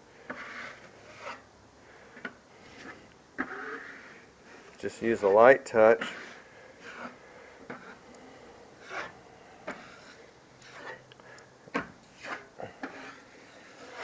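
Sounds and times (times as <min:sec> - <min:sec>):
drywall knife scraping: 0:00.2 - 0:01.4, 0:02.2 - 0:04.7, 0:06.0 - 0:08.0, 0:08.8 - 0:11.0, 0:12.0 - 0:14.0.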